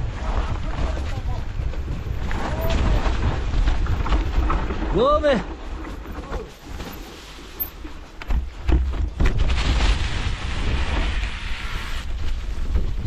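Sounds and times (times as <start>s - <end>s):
wind buffeting microphone: 0.0s - 5.6s
bike knocks and rattles: 0.3s - 10.0s.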